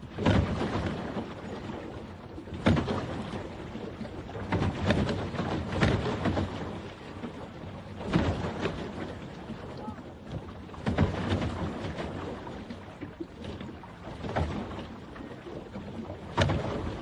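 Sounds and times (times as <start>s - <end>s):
water sloshing against boat: 0.0s - 17.0s
water splashing: 0.0s - 17.0s.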